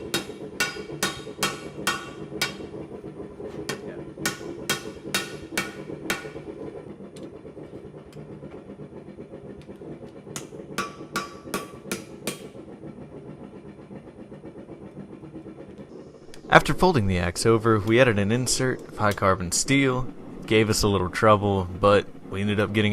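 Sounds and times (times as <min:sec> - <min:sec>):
hammer striking steel on anvil: 0:00.0 - 0:02.8, 0:03.6 - 0:06.4, 0:10.4 - 0:12.5
steady low hum: 0:00.0 - 0:22.9.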